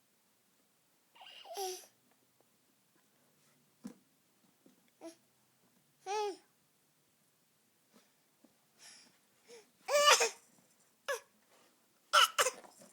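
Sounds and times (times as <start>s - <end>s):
baby cough-like noise: 9.9s - 10.4s, 12.1s - 12.7s
baby squealing: 12.2s - 12.6s.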